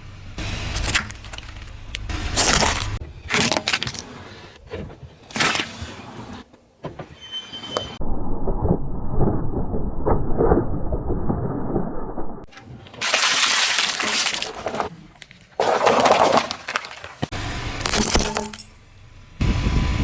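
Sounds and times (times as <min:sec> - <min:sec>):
objects crunching under car tyre: 0:00.5 - 0:06.6, 0:12.4 - 0:18.7.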